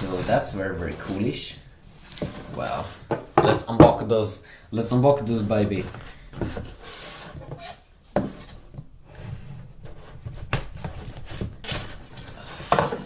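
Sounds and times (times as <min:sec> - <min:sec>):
hands rubbing and scraping box: 0:00.0 - 0:03.8.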